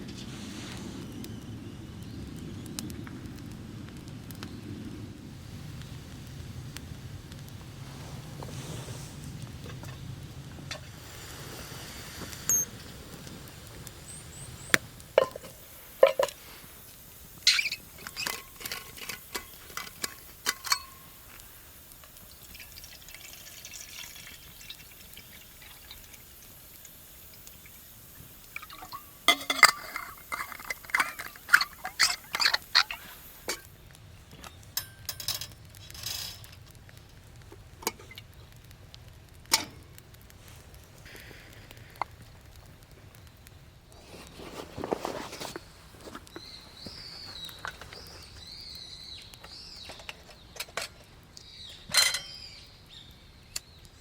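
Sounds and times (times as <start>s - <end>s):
liquid being poured: 22.1s - 33.2s
cookware clinking and knocking: 29.3s - 32.2s.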